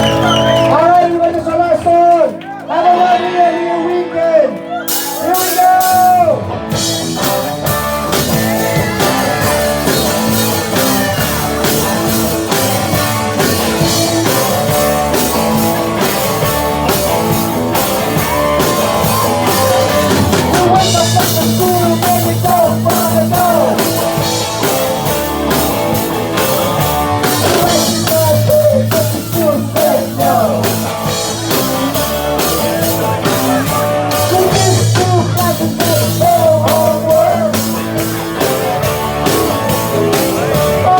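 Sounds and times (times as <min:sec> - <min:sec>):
live rock band playing: 0:00.0 - 0:40.9
person singing: 0:18.2 - 0:24.0, 0:27.2 - 0:40.9.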